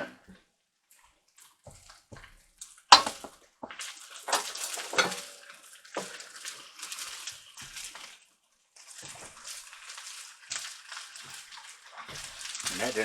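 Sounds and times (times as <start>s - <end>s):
spatula scraping frying pan: 2.9s - 8.1s, 9.0s - 13.0s.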